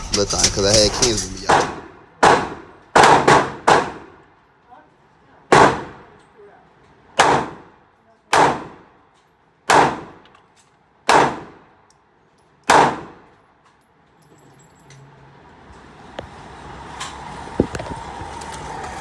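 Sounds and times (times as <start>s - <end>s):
handgun shots with echo: 1.5s - 4.2s, 5.5s - 6.1s, 7.2s - 7.7s, 8.3s - 8.9s, 9.7s - 10.4s, 11.1s - 11.6s, 12.7s - 13.3s.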